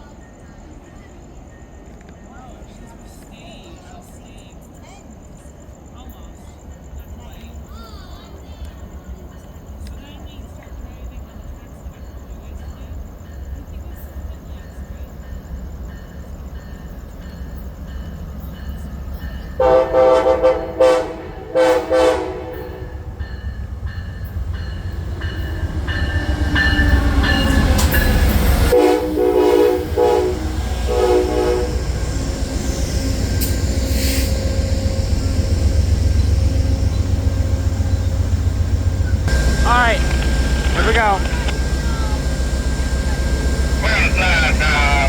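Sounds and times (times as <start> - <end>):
diesel locomotive rumble: 2.6 - 45.0
train horn blasts: 19.6 - 23.2, 25.4 - 45.0.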